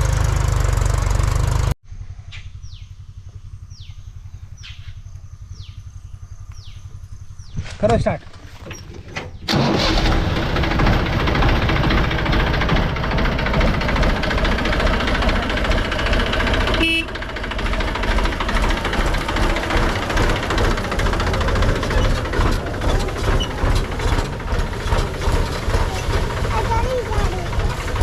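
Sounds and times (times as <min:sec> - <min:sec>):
diesel engine chugging: 0:00.0 - 0:01.8, 0:02.6 - 0:28.0
short horn beep: 0:16.8 - 0:17.1.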